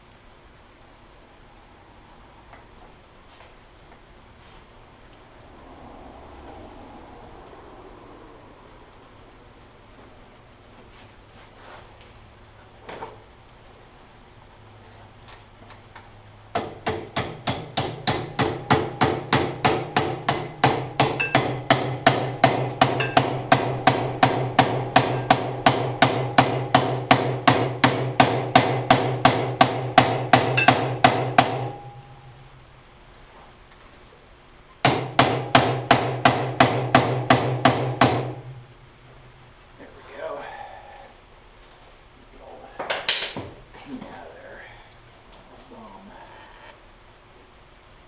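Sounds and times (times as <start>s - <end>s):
hammer blows on metal: 16.6s - 32.4s.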